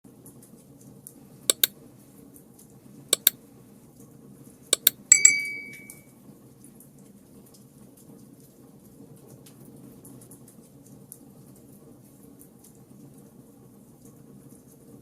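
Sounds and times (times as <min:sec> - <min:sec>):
sharp clicks: 0:01.5 - 0:01.7, 0:04.8 - 0:05.5
ringing clink: 0:04.8 - 0:06.0.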